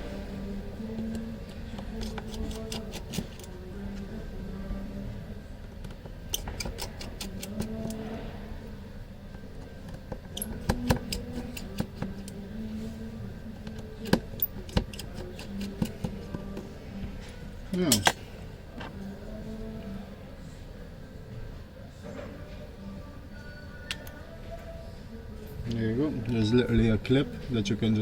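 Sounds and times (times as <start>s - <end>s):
faint low hum: 0.0s - 28.0s.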